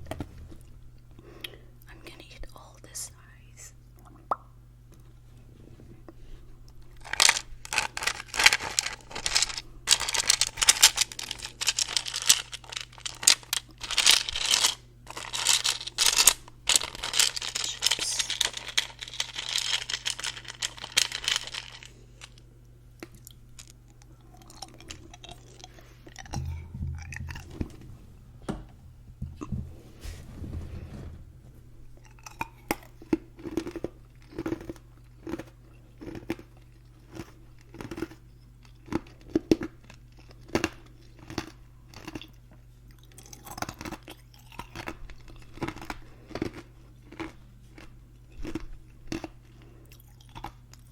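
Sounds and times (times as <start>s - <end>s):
ice crunching being chewed: 6.7s - 22.4s, 23.0s - 26.6s, 32.0s - 50.9s
low rumble: 26.2s - 32.1s.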